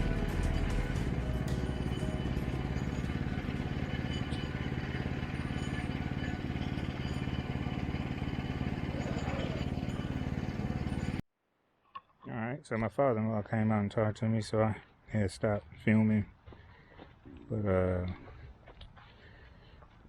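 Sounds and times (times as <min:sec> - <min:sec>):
small gasoline engine running: 0:00.0 - 0:11.2.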